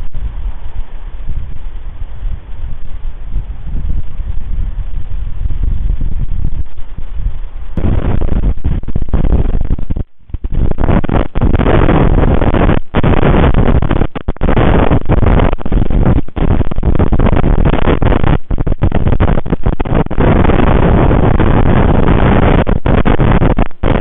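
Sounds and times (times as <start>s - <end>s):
strong wind buffeting microphone: 0.0s - 24.0s.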